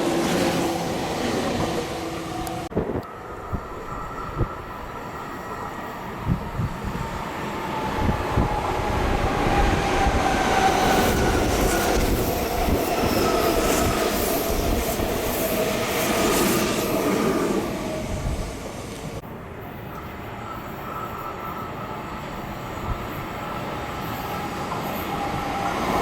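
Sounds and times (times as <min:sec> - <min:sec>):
train wheels rumbling on rails: 0:00.0 - 0:19.2.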